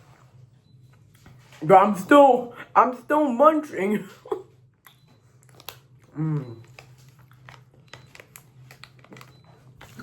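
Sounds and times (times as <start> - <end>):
person chewing: 4.8 - 10.0
person humming: 6.1 - 6.6.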